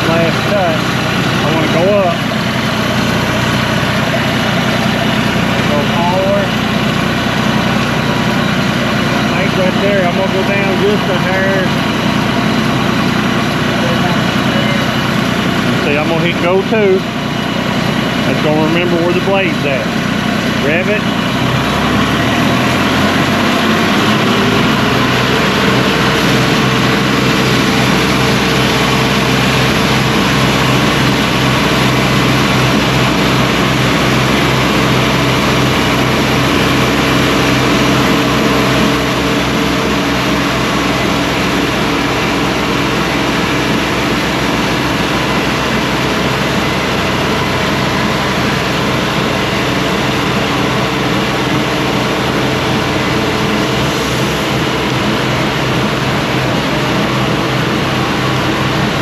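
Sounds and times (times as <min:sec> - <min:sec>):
sawmill engine revving: 0:00.0 - 0:59.0.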